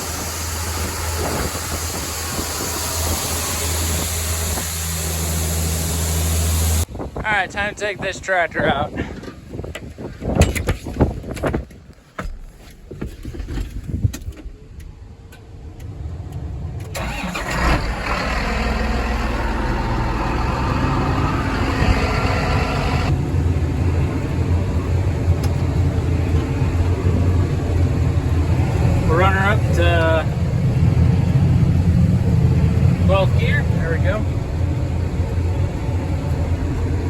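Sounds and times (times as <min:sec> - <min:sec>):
tractor diesel engine starting: 0:00.0 - 0:06.9, 0:16.7 - 0:37.0.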